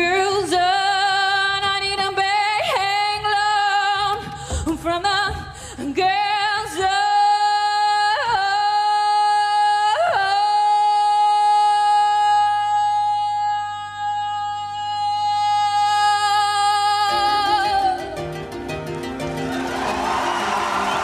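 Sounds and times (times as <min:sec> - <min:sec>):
woman singing long wordless note: 0:06.0 - 0:18.4.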